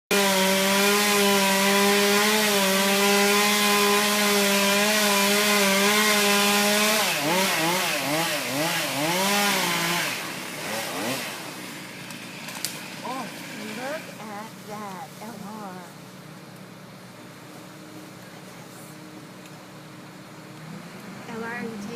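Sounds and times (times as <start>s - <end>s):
chainsaw engine revving: 0.1s - 14.3s.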